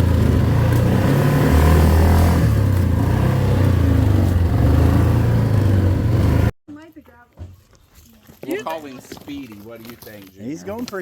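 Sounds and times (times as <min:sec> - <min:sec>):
off-road vehicle engine revving: 0:00.0 - 0:06.6.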